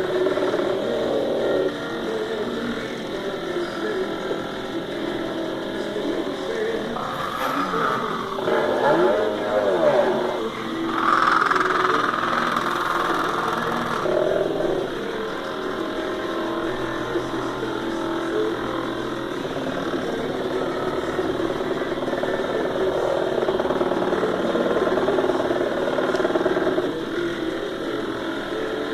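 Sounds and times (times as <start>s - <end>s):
cnc machine motors whining: 0.0s - 28.9s.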